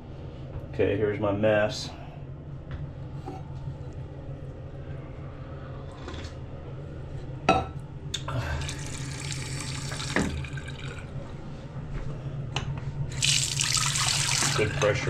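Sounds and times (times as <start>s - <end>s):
water running from faucet: 8.6s - 11.1s, 13.1s - 15.0s
faucet clunk: 9.9s - 11.0s.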